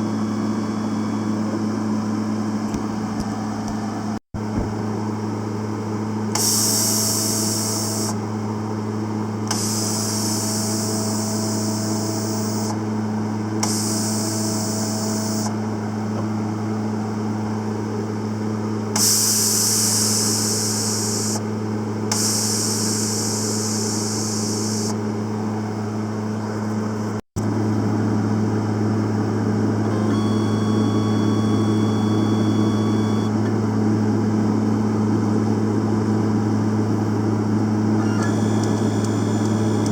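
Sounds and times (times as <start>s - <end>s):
welder transformer hum: 0.0s - 39.9s
welding torch hiss: 19.0s - 21.4s, 22.1s - 24.9s.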